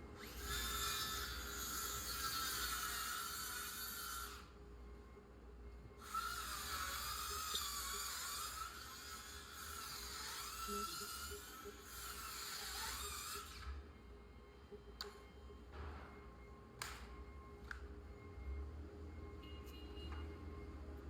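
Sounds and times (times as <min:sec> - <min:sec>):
electric power tool motor whine: 0:00.0 - 0:04.6, 0:06.0 - 0:13.9.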